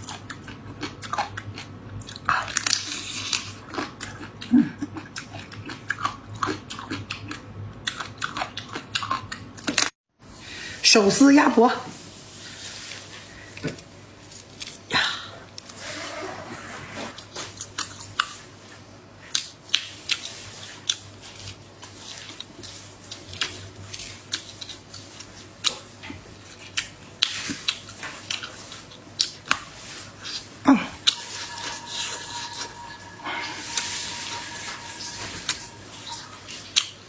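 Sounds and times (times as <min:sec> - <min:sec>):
chewing: 0:00.0 - 0:09.9, 0:17.4 - 0:31.2
faint steady tone: 0:31.1 - 0:36.7.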